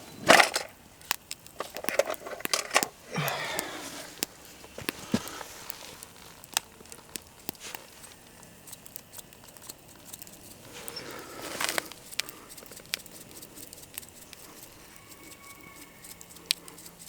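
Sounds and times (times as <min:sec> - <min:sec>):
burning wood crackling: 0:00.0 - 0:17.0
faint steady hiss: 0:00.0 - 0:17.0
bacon frying in a pan: 0:00.7 - 0:17.0.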